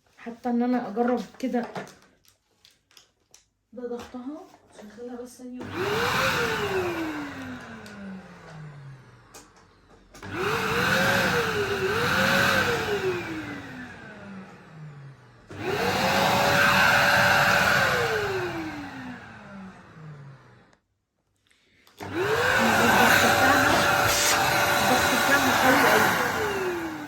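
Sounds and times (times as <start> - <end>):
vacuum cleaner motor whining: 5.6 - 20.8, 21.9 - 27.0.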